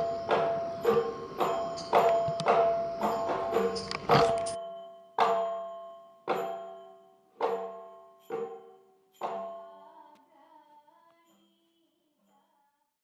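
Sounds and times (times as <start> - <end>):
struck pitched instrument notes: 0.0 - 4.6
soft wavering tones: 0.0 - 6.0.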